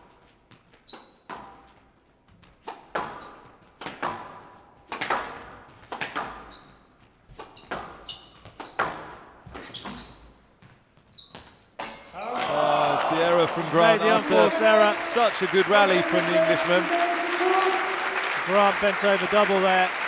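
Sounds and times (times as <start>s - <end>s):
shoes squeaking on court: 0.5s - 3.8s, 6.4s - 12.4s
squash racket hits: 2.6s - 6.6s.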